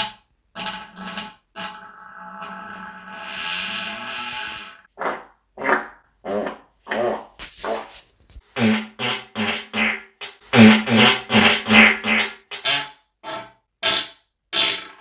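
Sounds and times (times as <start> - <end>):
person farting: 5.0 - 12.9, 14.6 - 15.0.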